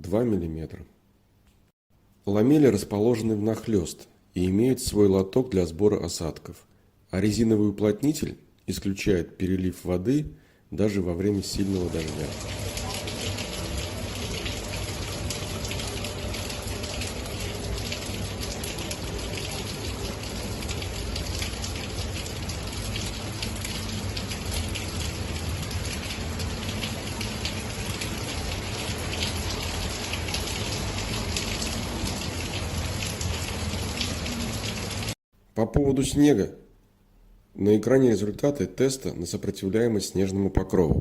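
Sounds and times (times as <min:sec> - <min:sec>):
heavy rain on metal roof: 0:11.6 - 0:35.2.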